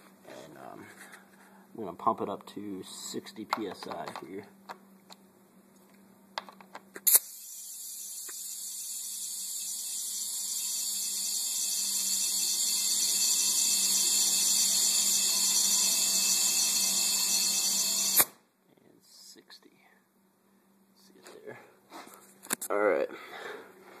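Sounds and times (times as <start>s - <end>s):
valve click: 7.1s - 10.3s, 18.0s - 18.4s.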